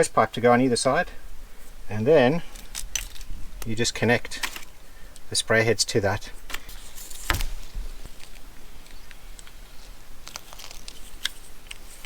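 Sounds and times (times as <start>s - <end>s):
crinkling: 2.4s - 5.3s, 6.4s - 12.0s.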